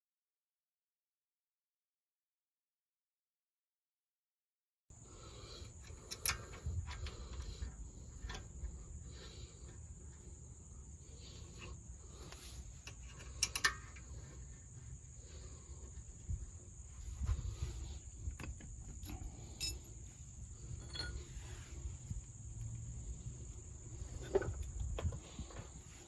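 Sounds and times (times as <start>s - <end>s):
metallic clicks and clinks: 5.8s - 7.2s, 12.8s - 14.1s, 18.4s - 20.0s, 20.7s - 21.4s
high-pitched insect drone: 13.4s - 24.7s.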